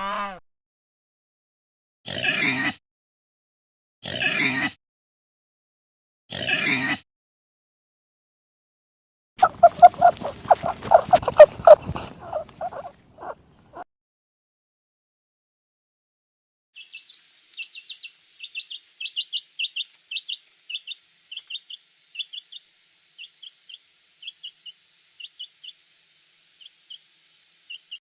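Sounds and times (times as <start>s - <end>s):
farm animal pulsing calls: 9.4s - 13.8s
pig oinking: 9.4s - 13.8s.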